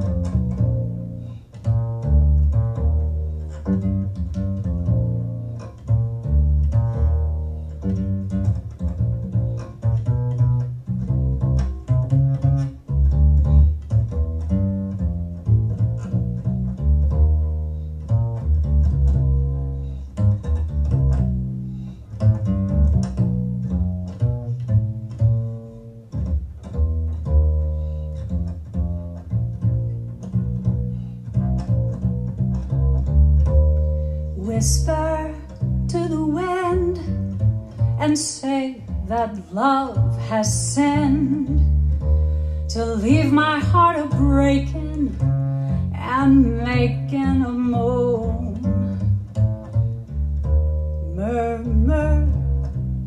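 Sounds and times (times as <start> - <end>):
plucked double bass: 0.0 - 53.0.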